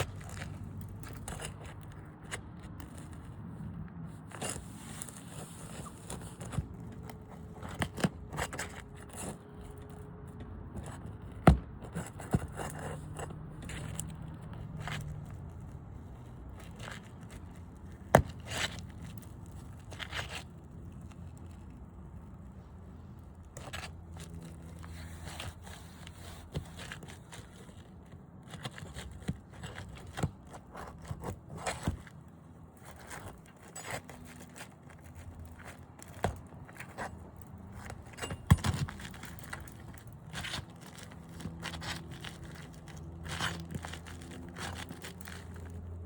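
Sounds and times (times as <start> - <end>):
shingles scraping and crackling: 0.0 - 46.0.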